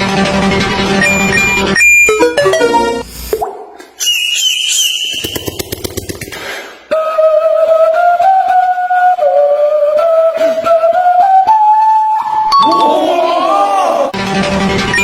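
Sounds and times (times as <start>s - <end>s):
whistle-like tones: 1.0s - 3.4s, 4.0s - 5.6s, 7.9s - 13.0s.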